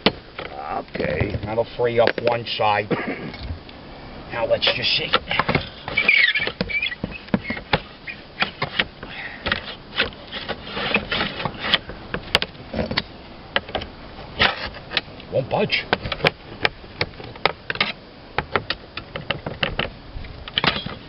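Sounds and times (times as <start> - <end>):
metal tool scraping slate: 5.4 - 8.8, 9.5 - 11.8
squeal: 5.9 - 8.2.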